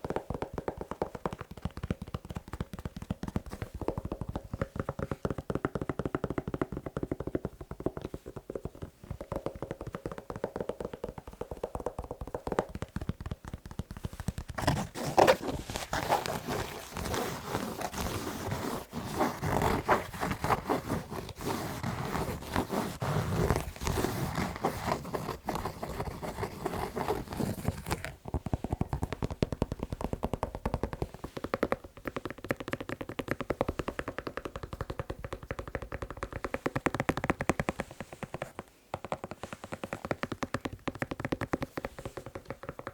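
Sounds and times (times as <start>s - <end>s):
fast tapping on shoe: 0.0s - 42.9s
fast scratching on shoe: 8.8s - 38.6s.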